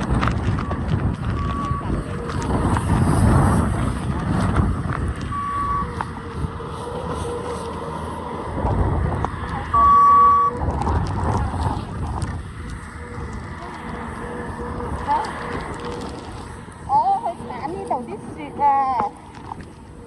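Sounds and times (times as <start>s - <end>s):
street vehicle rumble: 0.0s - 20.0s
high electronic beeps: 5.3s - 6.0s, 9.7s - 10.6s.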